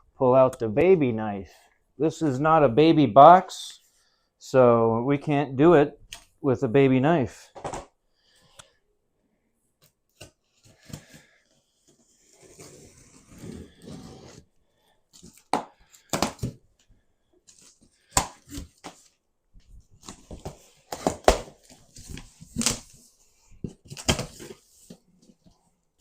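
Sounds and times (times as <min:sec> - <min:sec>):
knife cutting cardboard box: 0:10.2 - 0:14.5.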